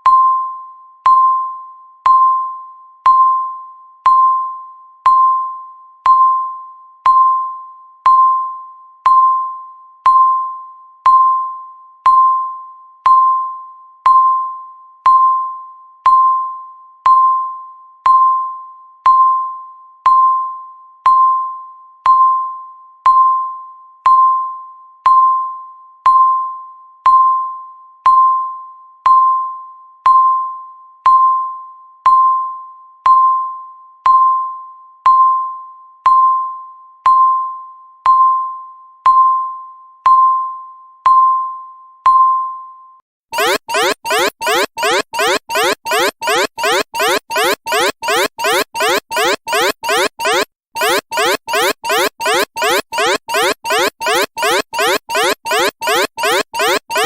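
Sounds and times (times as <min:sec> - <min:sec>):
countdown timer beeps: 0:43.4 - 0:57.0.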